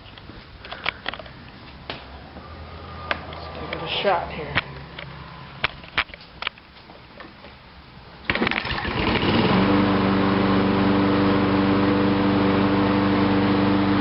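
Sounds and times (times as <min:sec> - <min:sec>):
lawn mower engine running: 0:08.3 - 0:14.0.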